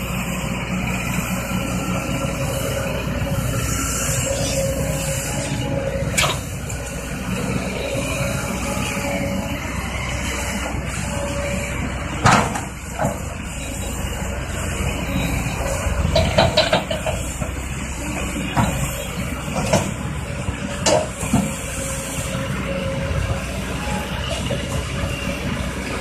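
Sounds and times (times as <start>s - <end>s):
excavator diesel engine running: 0.0s - 26.0s
metallic clanks and knocks: 16.1s - 17.2s.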